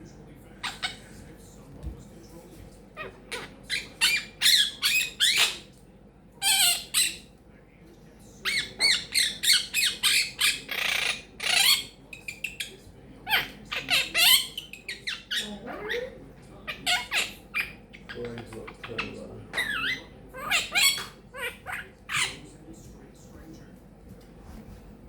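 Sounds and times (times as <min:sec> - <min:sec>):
parrot squawking and chattering: 0:00.6 - 0:01.2, 0:02.9 - 0:05.8, 0:06.4 - 0:07.3, 0:08.4 - 0:22.5.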